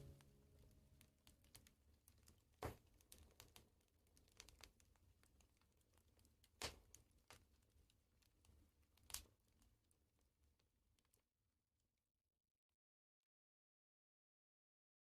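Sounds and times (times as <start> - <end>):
fire pops: 0.0 - 9.8
wood fire crackling: 0.0 - 11.3.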